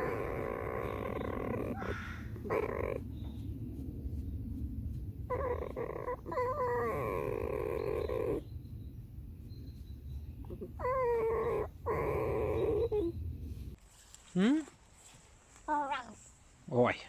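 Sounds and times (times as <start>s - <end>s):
fox squealing: 0.0s - 3.0s, 5.3s - 8.4s, 10.5s - 13.1s.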